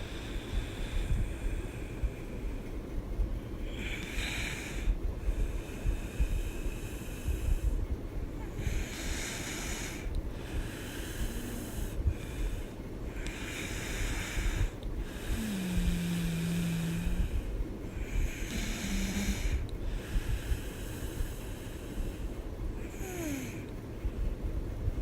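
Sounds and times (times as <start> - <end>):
low drawn-out hum: 0.0 - 25.0
woman snoring: 3.6 - 4.9, 8.4 - 12.5, 13.1 - 21.8, 22.8 - 23.7.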